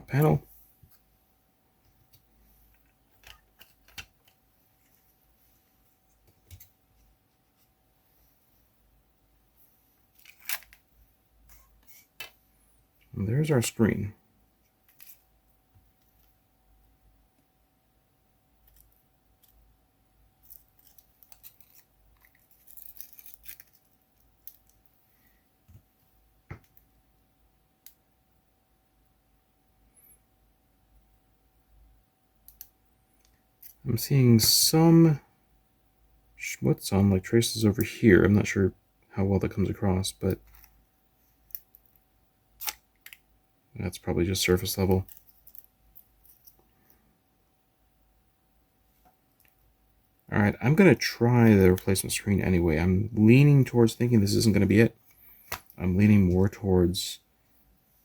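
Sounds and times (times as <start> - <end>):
faint steady hum: 0.0 - 58.0
faint steady whine: 0.0 - 58.0
small parts clicking and rustling: 2.1 - 5.2, 10.1 - 10.9, 14.6 - 15.2, 18.6 - 19.7, 20.4 - 25.0, 32.4 - 33.8, 40.3 - 40.8, 41.4 - 43.3, 44.8 - 47.0.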